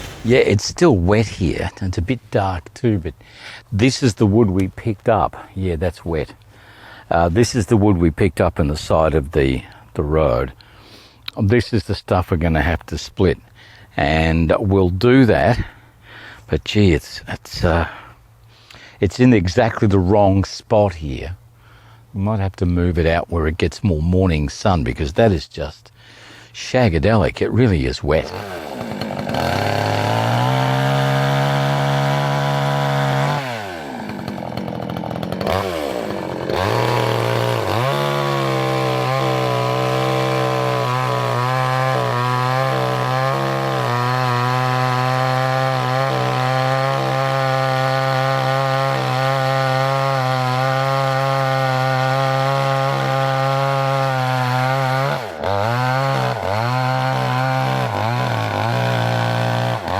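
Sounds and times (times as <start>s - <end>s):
chainsaw engine running: 0.0s - 0.6s, 28.2s - 59.9s.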